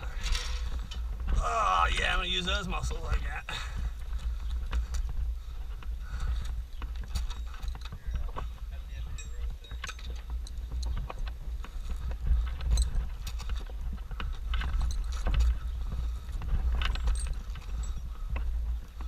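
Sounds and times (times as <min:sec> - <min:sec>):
low rumble on microphone: 0:00.0 - 0:19.0.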